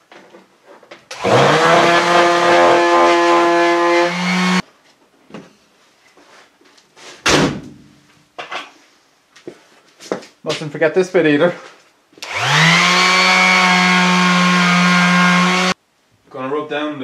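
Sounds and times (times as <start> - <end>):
electric sander whining: 1.2 - 4.6, 12.2 - 15.8.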